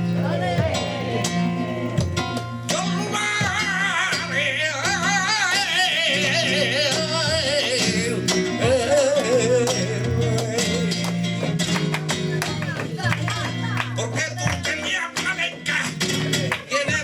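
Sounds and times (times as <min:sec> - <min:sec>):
man singing ornamented vocal line: 0:00.0 - 0:11.0, 0:14.0 - 0:17.0
sharp percussive strikes: 0:00.0 - 0:13.0
flamenco guitar: 0:00.0 - 0:17.0.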